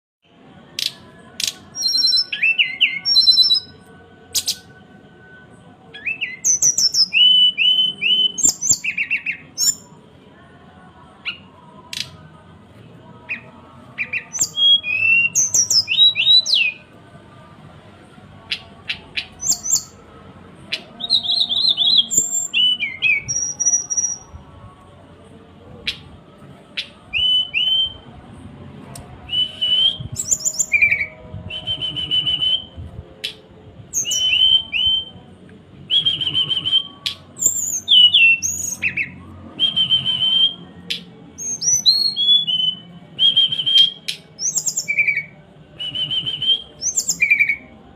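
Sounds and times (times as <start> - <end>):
songbird whistling: 0.8 - 4.7, 5.9 - 9.9, 13.3 - 16.9, 18.5 - 20.0, 20.7 - 24.4, 26.8 - 28.1, 29.3 - 35.2, 35.9 - 47.8.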